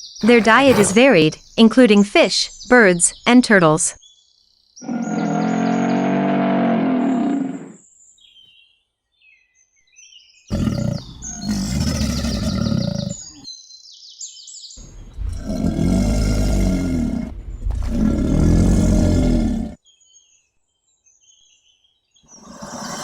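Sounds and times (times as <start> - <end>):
alligator bellowing: 0.2 - 1.4, 4.9 - 7.8, 10.5 - 13.4, 14.8 - 19.8.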